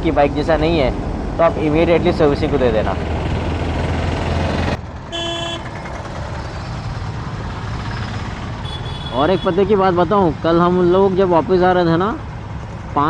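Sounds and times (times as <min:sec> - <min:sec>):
motorcycle engine rumble: 0:00.0 - 0:13.0
vehicle horn toot: 0:05.1 - 0:05.7, 0:08.6 - 0:09.7.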